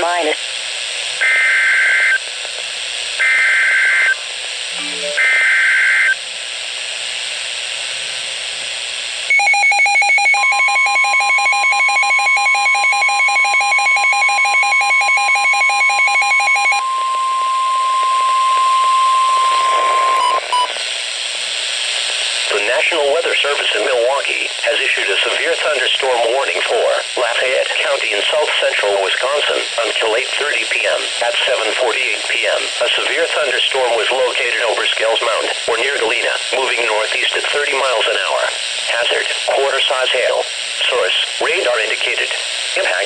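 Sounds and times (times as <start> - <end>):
radio hiss: 0.0 - 9.4, 19.5 - 43.0
steady warning alarm tone: 4.8 - 6.2, 9.3 - 20.7
rapid pulsing beep: 9.3 - 16.8.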